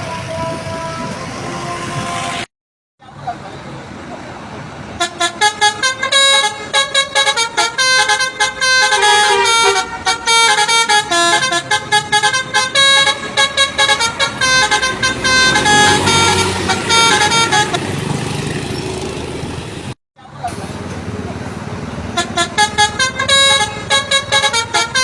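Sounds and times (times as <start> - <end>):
musical bus horn melody: 0.0 - 2.5, 5.0 - 18.2, 22.1 - 25.0.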